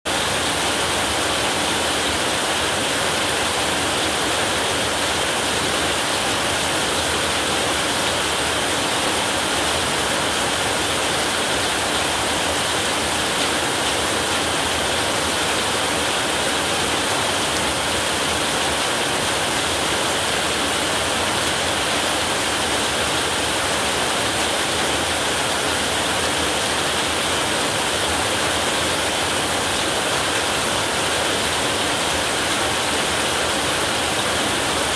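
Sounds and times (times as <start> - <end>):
heavy rain on a roof: 0.0 - 34.9.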